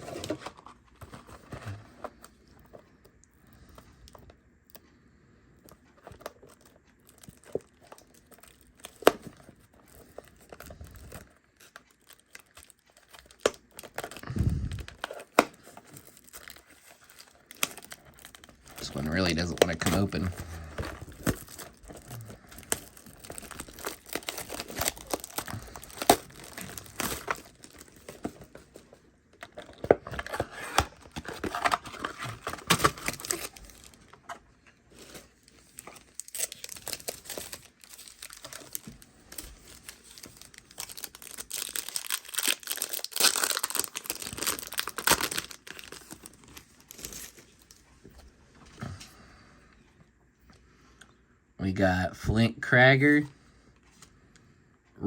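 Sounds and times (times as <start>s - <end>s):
foil wrapper crinkling and tearing: 6.1s - 34.3s, 35.0s - 47.8s.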